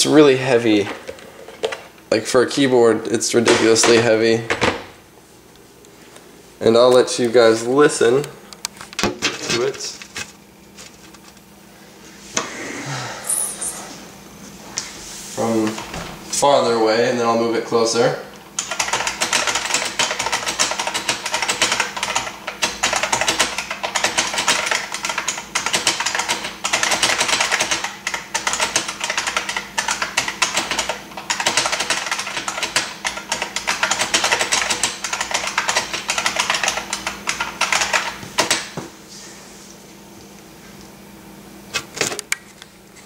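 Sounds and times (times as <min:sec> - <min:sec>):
mechanical keyboard typing clatter: 0:18.6 - 0:38.7.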